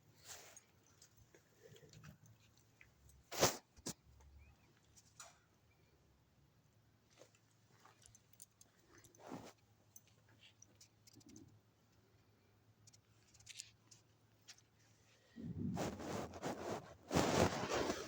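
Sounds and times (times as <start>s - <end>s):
sleeping dog soft sounds: 15.0s - 18.0s.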